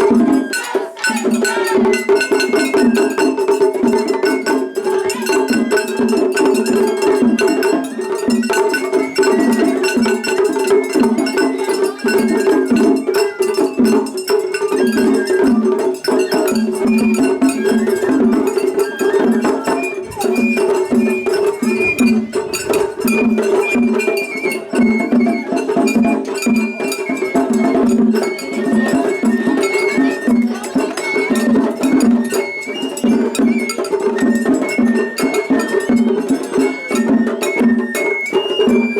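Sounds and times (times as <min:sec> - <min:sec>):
bamboo flute melody: 0:00.0 - 0:38.9
rapid drumming: 0:00.1 - 0:25.2
hand gong clanging: 0:17.6 - 0:23.8.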